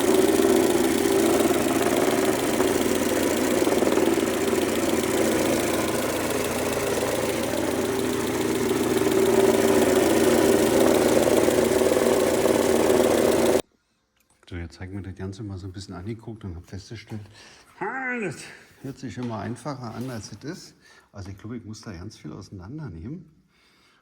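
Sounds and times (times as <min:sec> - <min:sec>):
car engine idling with odd noise: 0:00.0 - 0:13.6.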